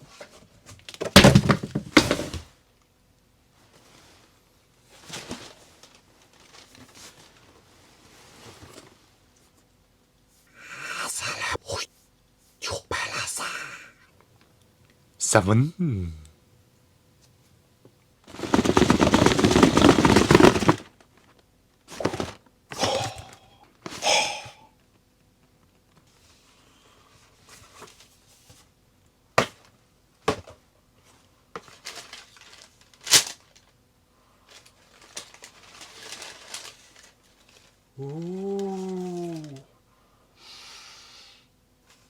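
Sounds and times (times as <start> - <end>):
packaging rustling: 18.3 - 21.2, 21.9 - 23.4, 31.6 - 33.6, 34.5 - 37.8.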